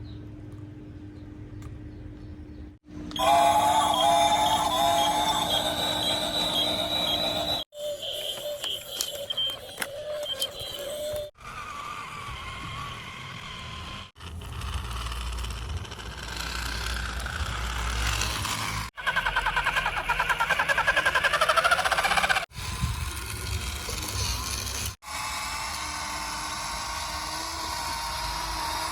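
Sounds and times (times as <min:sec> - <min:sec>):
vehicle engine rumble and hum: 0:00.0 - 0:03.2, 0:12.3 - 0:18.9
fast pulsing rattle: 0:14.2 - 0:25.0.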